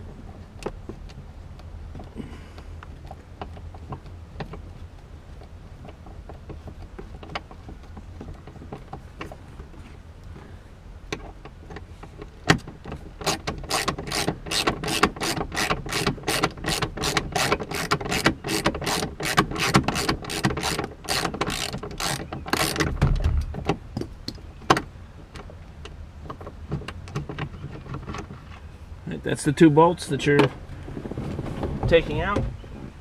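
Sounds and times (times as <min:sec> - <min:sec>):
socket wrench ratchet clicking: 0:13.2 - 0:22.9
knocks: 0:22.8 - 0:24.1.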